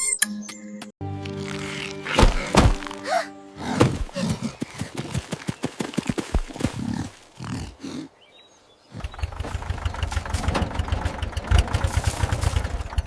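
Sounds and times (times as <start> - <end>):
engine chugging: 9.0 - 13.0.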